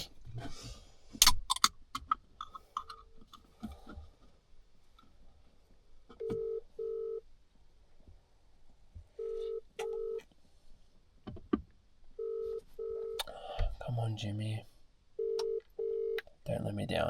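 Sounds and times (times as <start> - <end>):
telephone ringback tone: 6.2 - 7.2, 9.2 - 10.2, 12.2 - 13.2, 15.2 - 16.2.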